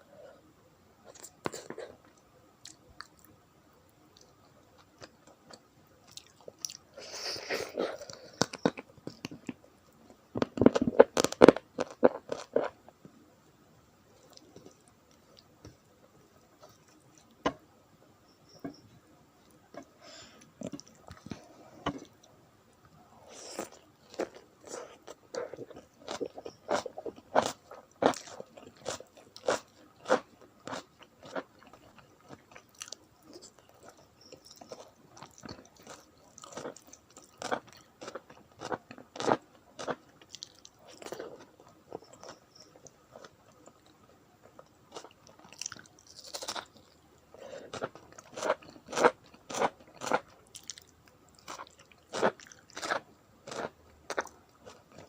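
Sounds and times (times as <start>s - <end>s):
person chewing and crunching food: 4.2s - 9.6s, 10.4s - 12.8s, 19.7s - 22.3s, 23.2s - 55.0s.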